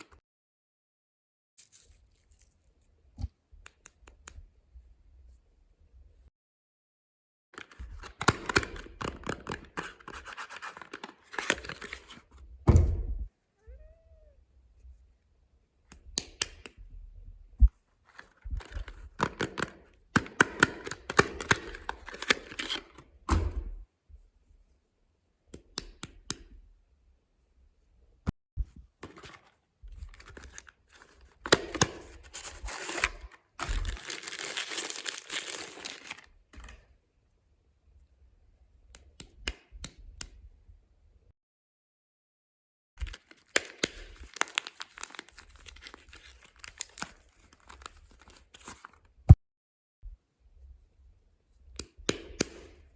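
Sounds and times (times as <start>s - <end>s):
wrapper crinkling and tearing: 30.1s - 36.4s, 43.0s - 49.1s.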